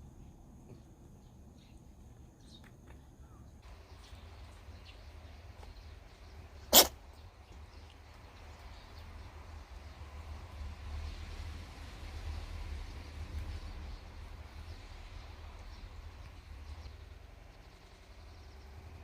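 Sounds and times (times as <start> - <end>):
cat sneezing: 6.6 - 7.0.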